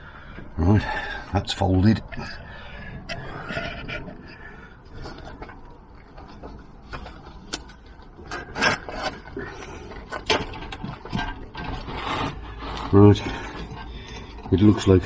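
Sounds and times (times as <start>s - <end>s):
bike frame clanking and knocking: 5.5s - 15.0s.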